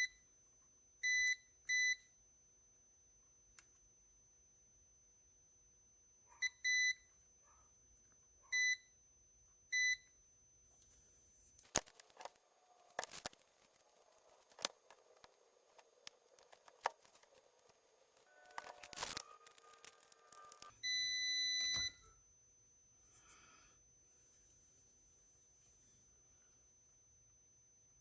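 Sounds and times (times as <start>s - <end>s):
multimeter beeping: 11.6s - 22.1s.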